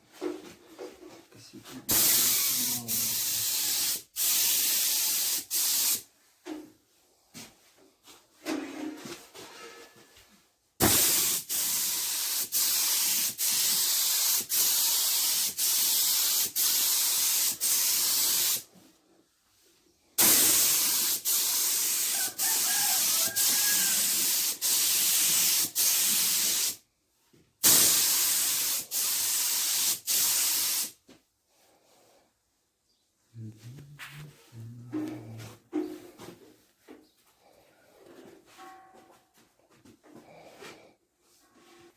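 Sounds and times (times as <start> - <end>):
spray can hissing: 1.9 - 6.0, 10.8 - 18.7, 20.2 - 26.8, 27.6 - 31.0.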